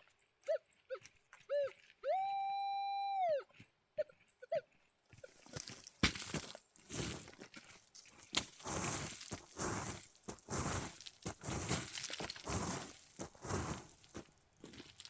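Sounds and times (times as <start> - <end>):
crunching of rock and gravel: 5.2 - 15.0.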